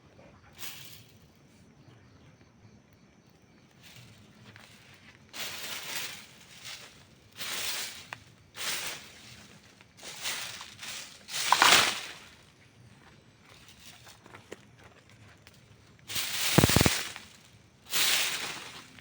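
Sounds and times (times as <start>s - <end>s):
campfire hissing and crackling: 3.3s - 14.8s, 15.4s - 19.0s
fire popping: 16.1s - 17.4s.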